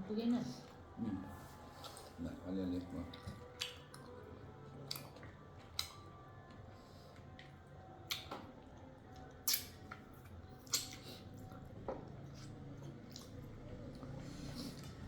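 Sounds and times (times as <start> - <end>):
wet chewing smacks and clicks: 3.0 - 4.2, 8.1 - 8.4, 9.1 - 14.1.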